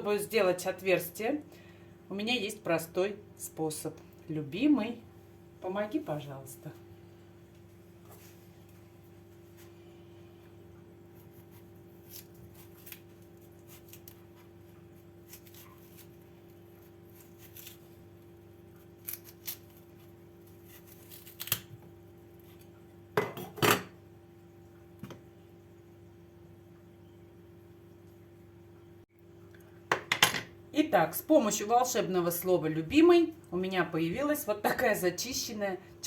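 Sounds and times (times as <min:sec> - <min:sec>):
faint hum: 0:00.0 - 0:36.0.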